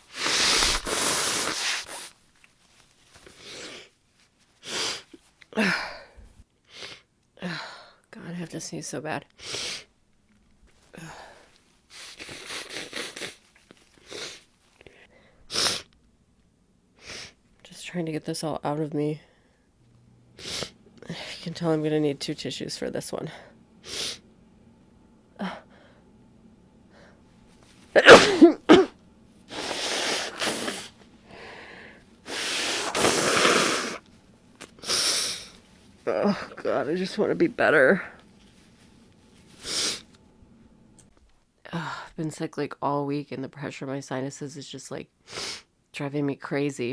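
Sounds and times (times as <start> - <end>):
woman blowing nose: 0.0 - 2.2, 3.3 - 4.0, 4.6 - 6.0, 11.9 - 14.5, 15.5 - 15.9, 20.4 - 21.4, 23.8 - 24.2, 27.8 - 38.7, 39.4 - 40.2
woman sneezing: 28.0 - 30.9, 32.3 - 34.0, 34.8 - 38.2
woman sniffling and gasping: 29.5 - 34.0.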